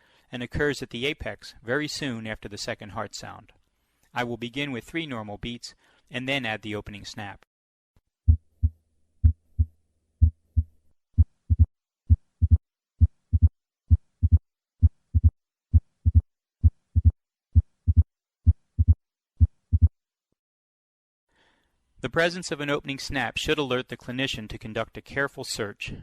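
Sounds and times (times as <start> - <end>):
heartbeat through stethoscope: 8.3 - 20.0.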